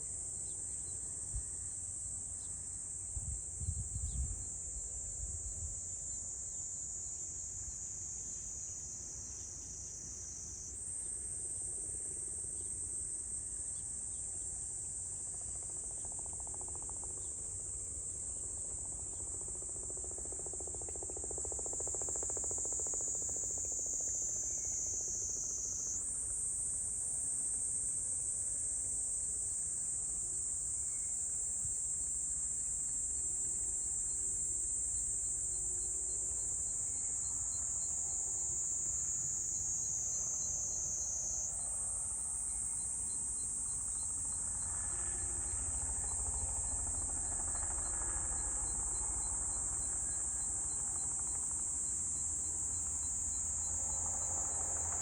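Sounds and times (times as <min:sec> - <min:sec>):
low rumble of wind: 0:03.0 - 0:06.0
insects chirping shrill drone: 0:15.2 - 0:26.3, 0:32.5 - 0:55.0.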